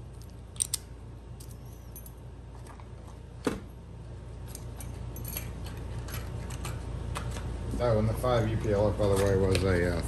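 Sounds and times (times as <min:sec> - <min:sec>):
steady low hum: 0:00.0 - 0:10.0
metal padlock clicks: 0:00.5 - 0:02.1.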